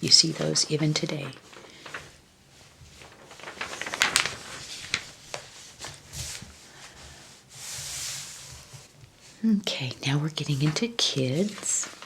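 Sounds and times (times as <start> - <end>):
paper crackling: 0.0 - 9.2, 10.4 - 12.0
page swishing: 1.3 - 9.0.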